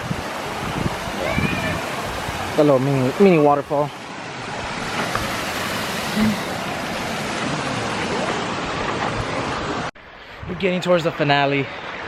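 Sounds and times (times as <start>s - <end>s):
waterfall rushing and splashing: 0.0s - 10.0s.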